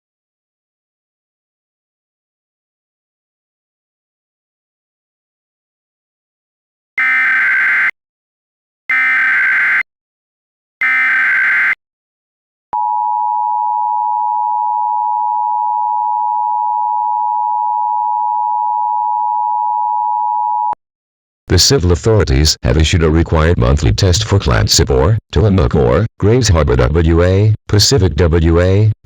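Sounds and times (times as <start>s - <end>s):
data tone bursts: 7.0s - 7.9s, 8.9s - 9.8s, 10.8s - 11.8s
two-tone attention signal: 7.0s - 7.9s, 8.9s - 9.8s, 10.8s - 11.8s.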